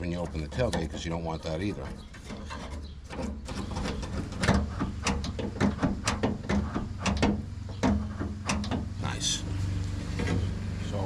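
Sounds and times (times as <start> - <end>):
steady low hum: 0.0 - 11.0
clicks and knocks on tailgate latch: 2.2 - 8.9.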